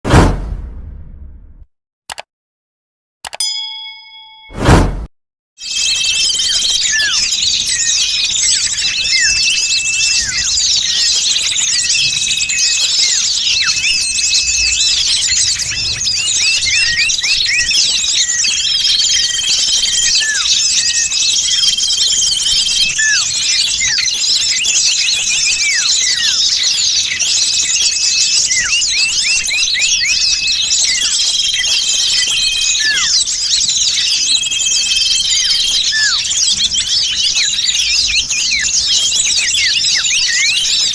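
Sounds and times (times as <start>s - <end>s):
small songbirds chirping: 5.6s - 40.9s.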